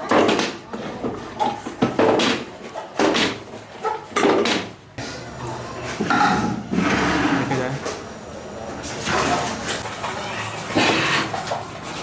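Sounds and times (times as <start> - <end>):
sharp knocks and clatters: 0.0 - 4.8.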